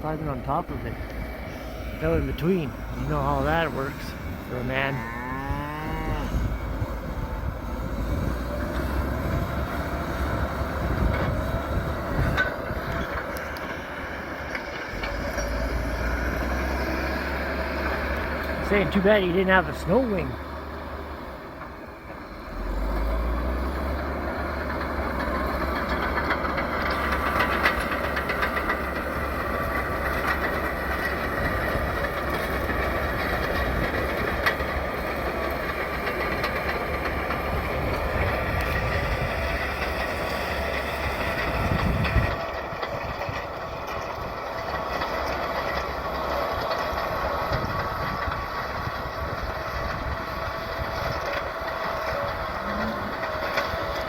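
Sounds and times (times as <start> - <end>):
diesel engine running under load: 0.0 - 54.0
steel tracks clanking and squealing: 24.6 - 54.0.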